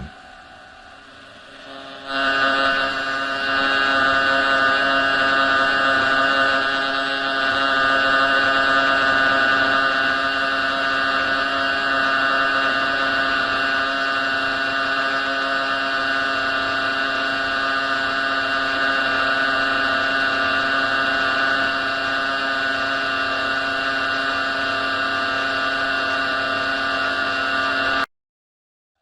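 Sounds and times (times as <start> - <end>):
layered electronic drone: 0.0 - 3.5.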